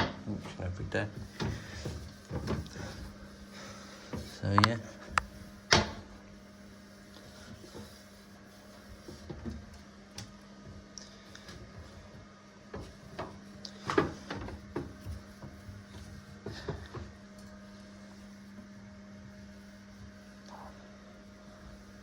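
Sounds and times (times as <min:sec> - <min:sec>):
light knocks and clatters: 0:00.0 - 0:03.2
steady low hum: 0:00.0 - 0:22.0.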